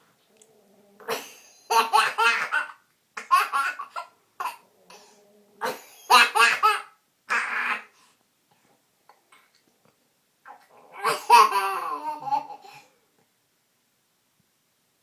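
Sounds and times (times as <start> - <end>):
small child laughing: 1.1 - 4.1, 5.6 - 7.5, 11.0 - 12.7.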